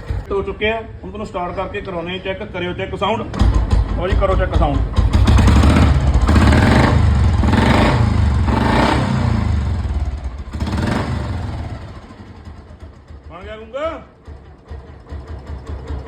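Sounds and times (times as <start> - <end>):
motorcycle engine revving: 3.3 - 13.3, 14.2 - 16.0.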